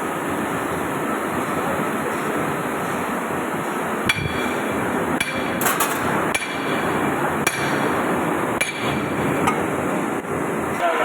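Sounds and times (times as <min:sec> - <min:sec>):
steady background noise: 0:00.0 - 0:11.0
hammer striking metal: 0:04.1 - 0:08.0, 0:08.6 - 0:09.6.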